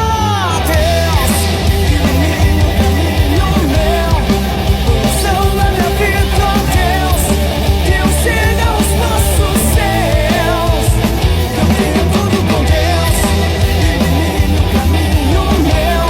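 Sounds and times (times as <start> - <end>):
rock music with singing: 0.0 - 16.0.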